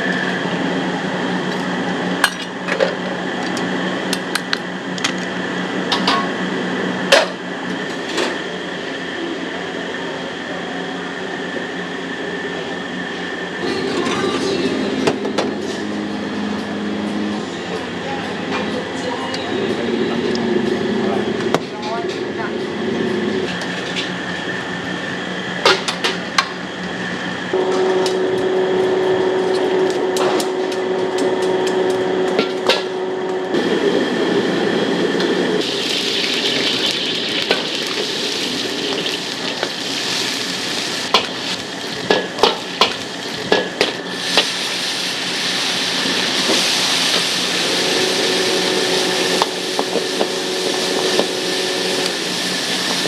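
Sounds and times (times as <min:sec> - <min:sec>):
steady hum: 0:00.0 - 0:53.0
food sizzling in oil: 0:35.6 - 0:53.0.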